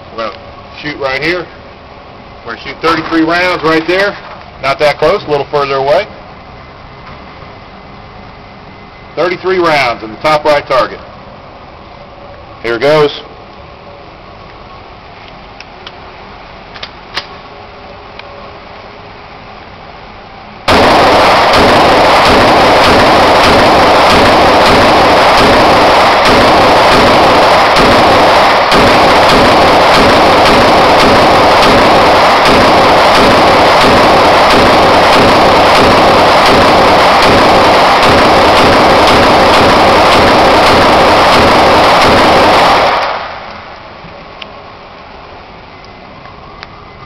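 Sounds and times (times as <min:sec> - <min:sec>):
pistol shots: 0:20.7 - 0:43.3.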